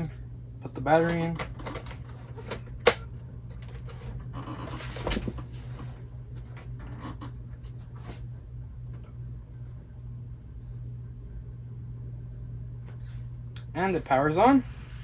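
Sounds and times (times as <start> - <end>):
low hum: 0.0 - 15.0
rustling scrape: 3.9 - 6.1.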